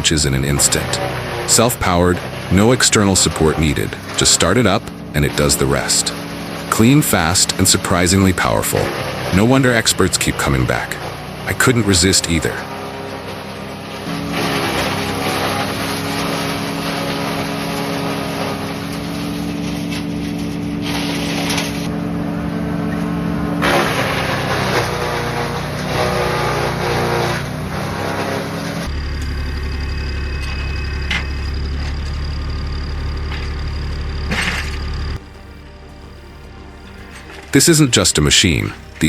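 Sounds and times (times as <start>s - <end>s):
wood chipper engine running: 0.0s - 39.0s
low hum: 28.6s - 39.0s.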